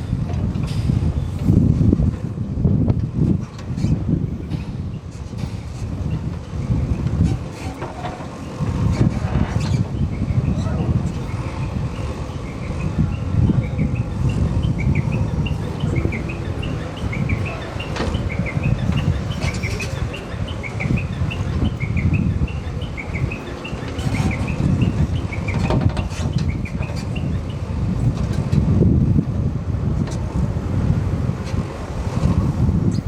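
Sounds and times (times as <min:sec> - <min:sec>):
steady low rumble: 0:00.0 - 0:33.0
small birds chirping: 0:09.7 - 0:27.6.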